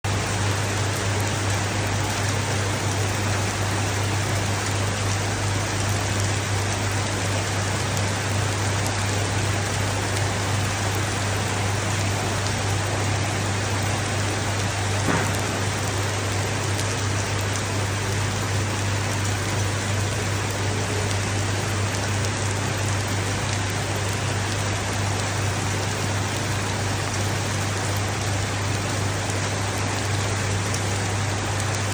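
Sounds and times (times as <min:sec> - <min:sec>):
rain falling: 0:00.1 - 0:31.9
steady low hum: 0:10.8 - 0:19.5.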